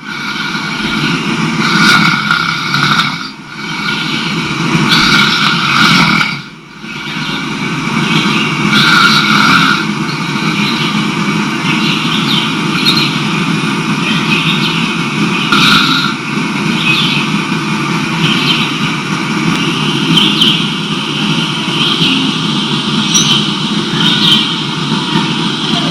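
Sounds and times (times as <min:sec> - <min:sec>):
man snoring: 0:00.0 - 0:07.2, 0:08.7 - 0:10.0, 0:15.5 - 0:16.2.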